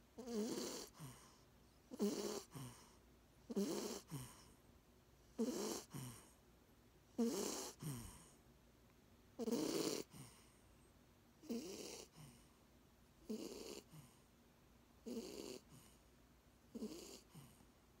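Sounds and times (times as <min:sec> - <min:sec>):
person snoring: 0:00.2 - 0:02.9, 0:03.5 - 0:04.5, 0:05.4 - 0:06.3, 0:07.2 - 0:08.3, 0:09.4 - 0:10.4, 0:11.4 - 0:12.4, 0:13.3 - 0:14.0, 0:15.1 - 0:15.8, 0:16.8 - 0:17.5.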